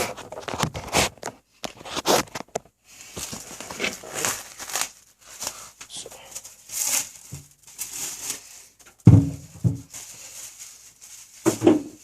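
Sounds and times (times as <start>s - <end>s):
plastic wrap crinkling: 0.0s - 12.0s.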